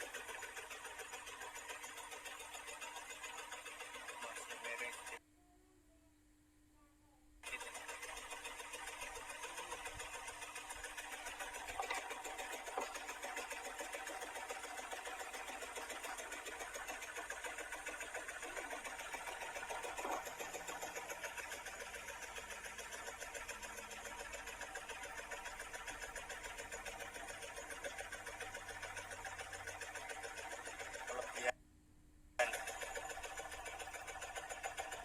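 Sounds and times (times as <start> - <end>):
scroll saw clattering: 7.4 - 31.3.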